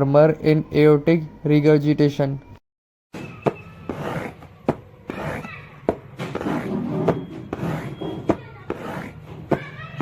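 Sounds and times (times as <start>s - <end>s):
rasping rubbing whoosh: 3.5s - 4.5s, 5.1s - 5.5s, 6.2s - 9.6s.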